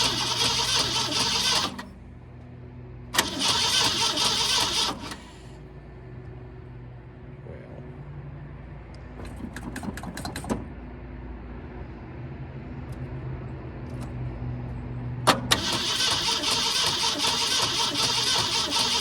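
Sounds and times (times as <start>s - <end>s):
engine cranking: 0.0s - 2.0s, 3.2s - 5.5s, 9.1s - 10.7s, 15.3s - 19.0s
starter click: 9.2s - 10.7s.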